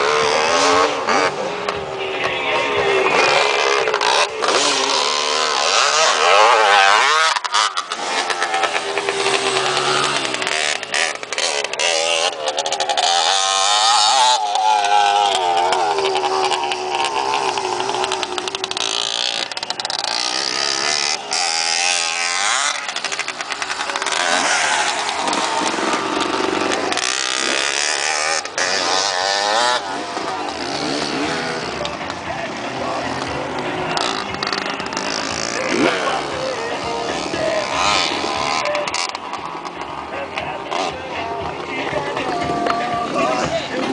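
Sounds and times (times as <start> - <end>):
dirt bike engines revving: 0.0 - 43.9.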